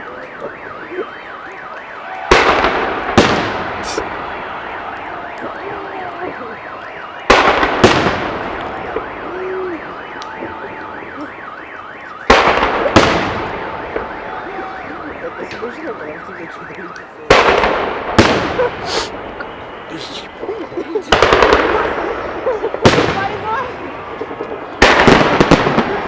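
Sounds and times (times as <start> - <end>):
car alarm warbling: 0.0 - 17.3
fireworks booming: 2.3 - 4.5, 7.2 - 9.3, 12.2 - 14.2, 17.3 - 20.4, 21.1 - 26.0.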